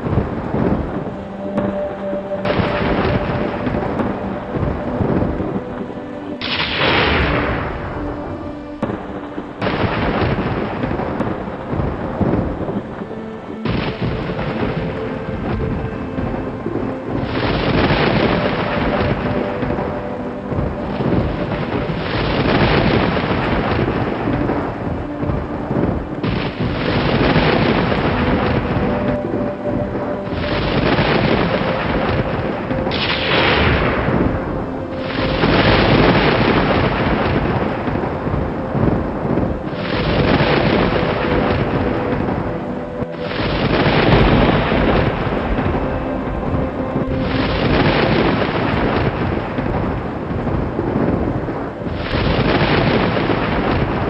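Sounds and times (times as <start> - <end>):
faint steady tone: 18.7 - 25.1.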